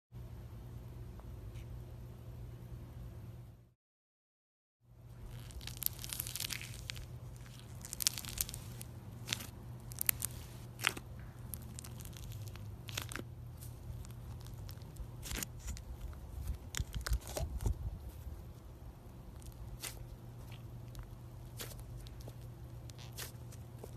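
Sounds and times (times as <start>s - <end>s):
slime squished by hand: 5.2s - 17.8s, 19.3s - 23.9s
slime crackles and pops: 5.3s - 13.3s, 19.4s - 23.9s.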